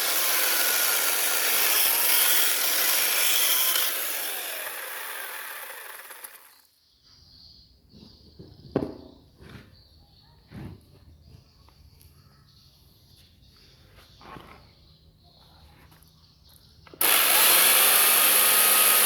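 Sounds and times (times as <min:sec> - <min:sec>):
chainsaw cutting wood: 0:00.0 - 0:06.7, 0:17.0 - 0:19.0.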